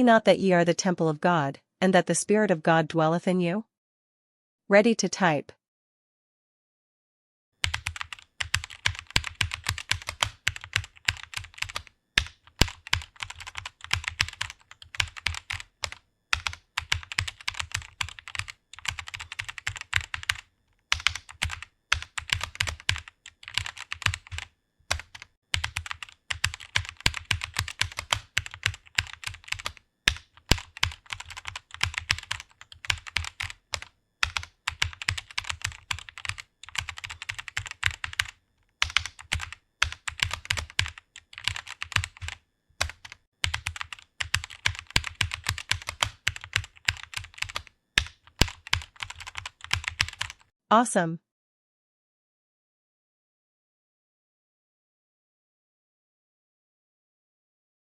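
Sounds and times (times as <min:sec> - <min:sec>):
fast keyboard typing: 0:07.6 - 0:50.5.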